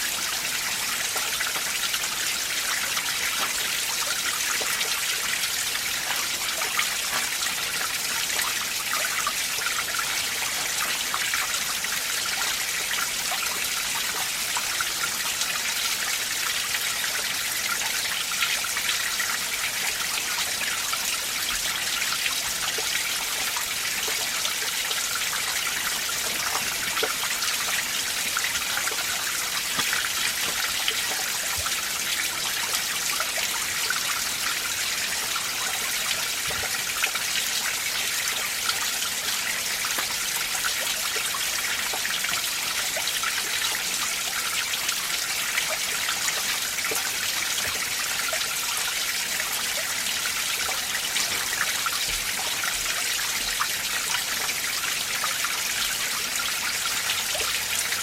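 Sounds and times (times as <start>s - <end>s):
stream water splashing over rocks: 0.0s - 58.0s.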